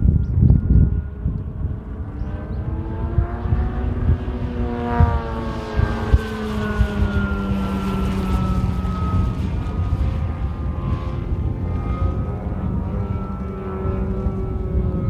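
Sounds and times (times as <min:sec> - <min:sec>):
model plane motor whine: 0:00.0 - 0:15.0
wind on microphone: 0:00.0 - 0:15.0.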